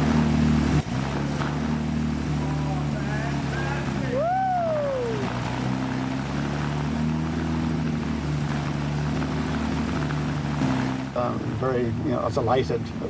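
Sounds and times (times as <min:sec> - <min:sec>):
car engine running: 0:00.0 - 0:13.0
falling whistle-like tone: 0:04.1 - 0:05.4.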